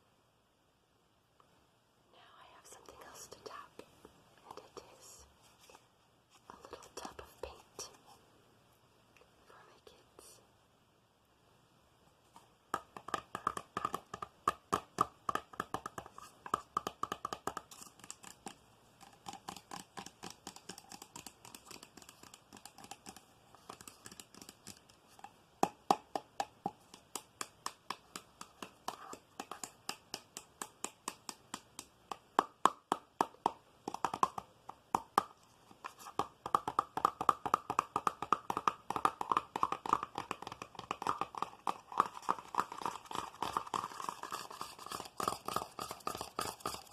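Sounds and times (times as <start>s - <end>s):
finger tapping on hard object: 12.7s - 46.9s.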